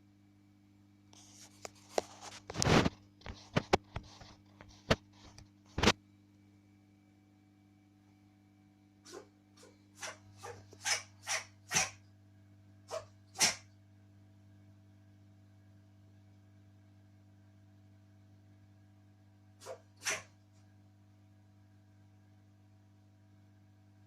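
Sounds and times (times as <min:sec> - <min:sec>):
ferret sneezing: 0:09.0 - 0:12.0, 0:12.9 - 0:13.7, 0:19.6 - 0:20.4.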